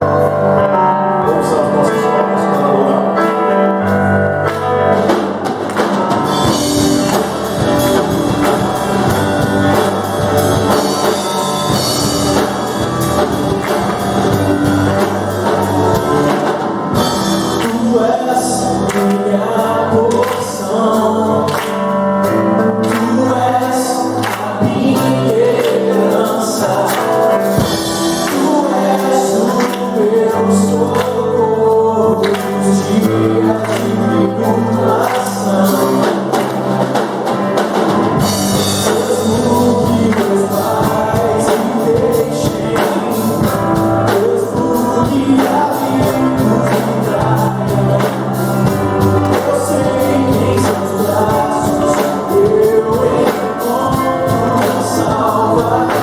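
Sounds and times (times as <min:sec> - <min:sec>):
bass guitar: 0:00.0 - 0:56.0
electric guitar: 0:00.0 - 0:56.0
keyboard: 0:00.0 - 0:56.0
drum kit: 0:01.3 - 0:56.0
people singing: 0:05.6 - 0:56.0.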